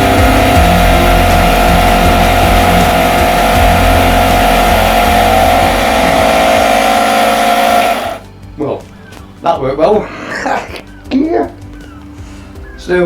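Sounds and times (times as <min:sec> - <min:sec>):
air compressor running: 0:00.0 - 0:08.3.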